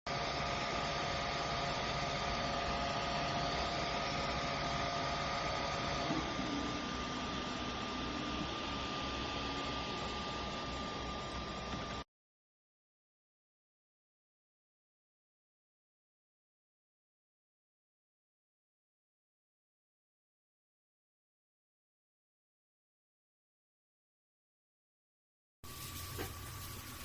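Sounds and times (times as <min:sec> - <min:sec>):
machine hum and whir: 0:00.1 - 0:12.1.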